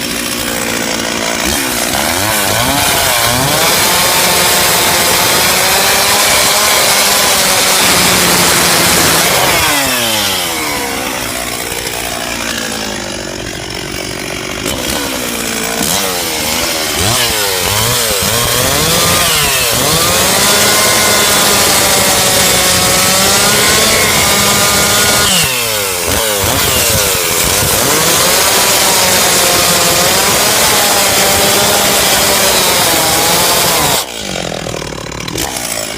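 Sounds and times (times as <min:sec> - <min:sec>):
chainsaw cutting wood: 0:00.0 - 0:35.9.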